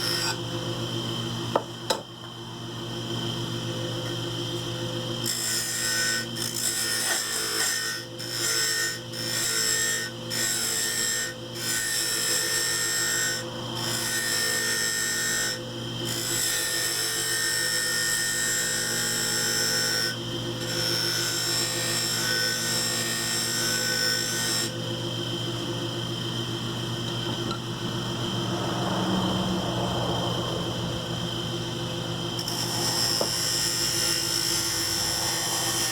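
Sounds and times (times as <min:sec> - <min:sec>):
wood lathe motor hum: 0:00.0 - 0:35.9.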